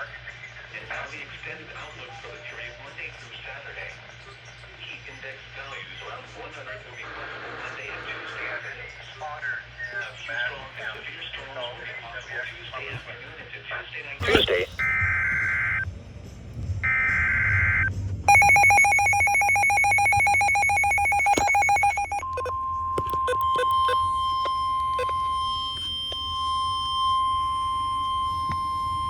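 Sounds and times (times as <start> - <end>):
ringing electronic alarm: 14.8 - 15.8, 16.8 - 29.0
steady alert tone: 18.3 - 25.2
clicks: 18.3 - 26.2.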